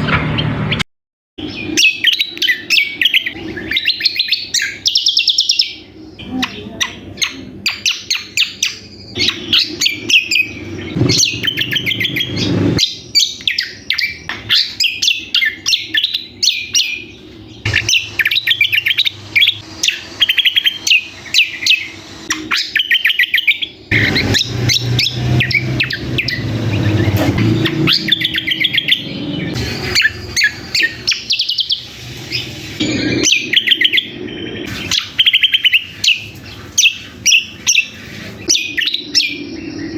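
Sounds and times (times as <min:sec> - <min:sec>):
bird chirping rapidly: 0:01.4 - 0:39.9.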